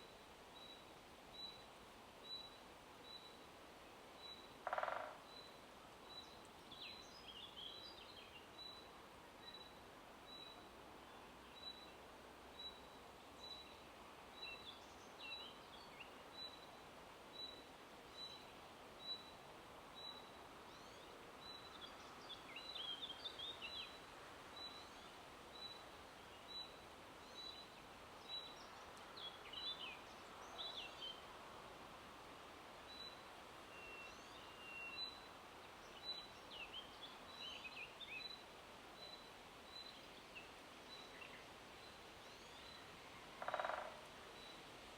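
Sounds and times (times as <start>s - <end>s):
wind in leaves: 0.0s - 44.9s.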